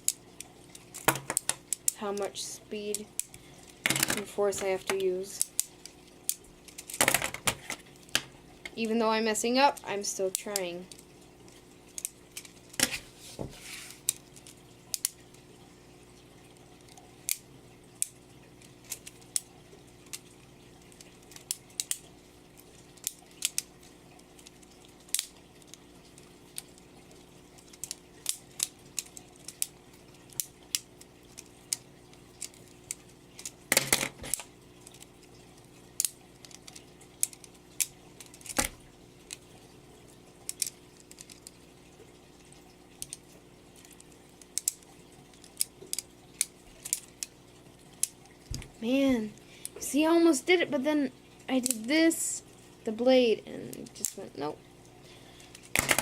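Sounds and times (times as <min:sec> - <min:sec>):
plastic clatters: 0:55.5 - 0:56.0.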